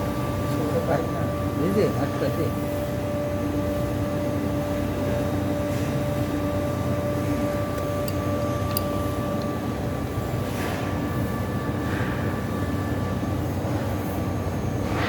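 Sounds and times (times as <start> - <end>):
machine motor hum: 0.0 - 10.5.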